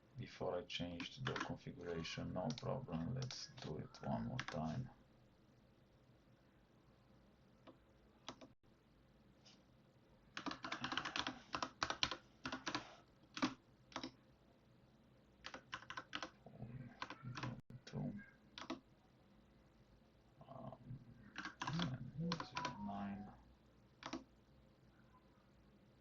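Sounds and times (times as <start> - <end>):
computer keyboard typing: 1.0 - 1.6, 4.4 - 4.7, 7.6 - 8.6, 10.4 - 14.2, 15.4 - 16.4, 17.0 - 17.6, 18.6 - 18.8, 21.3 - 22.9, 24.0 - 24.3.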